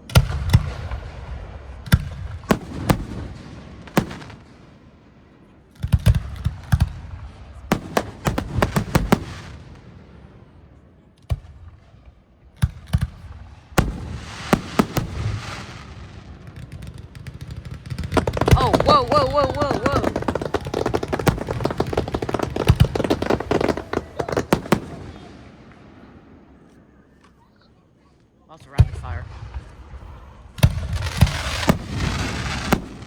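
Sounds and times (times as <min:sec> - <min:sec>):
crackling firework spray: 0:13.8 - 0:16.1, 0:18.0 - 0:25.3, 0:30.8 - 0:33.0
firework shells bursting: 0:13.8 - 0:25.3.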